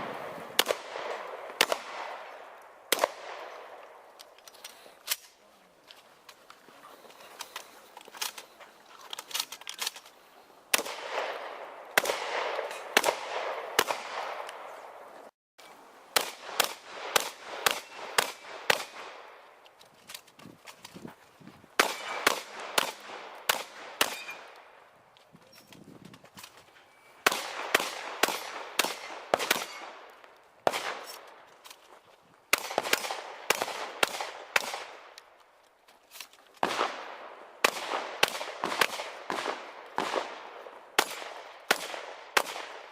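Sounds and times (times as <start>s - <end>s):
shotgun shots with echo: 0.0s - 2.3s, 10.7s - 14.7s, 16.2s - 19.3s, 21.8s - 24.5s, 27.2s - 30.0s, 30.6s - 31.1s, 32.5s - 35.0s, 36.6s - 42.9s.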